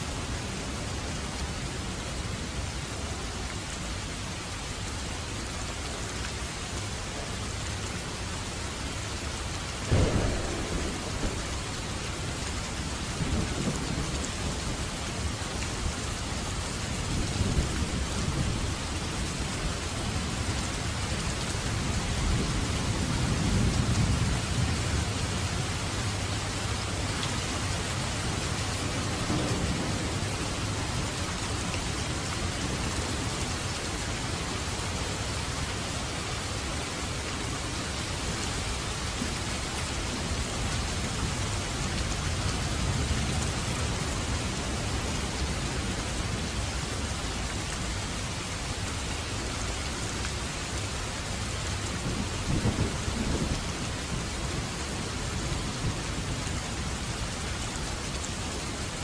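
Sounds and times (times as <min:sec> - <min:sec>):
heavy rain falling: 0:00.0 - 0:59.0
low rolling thunder: 0:09.8 - 0:36.5, 0:51.8 - 0:57.3.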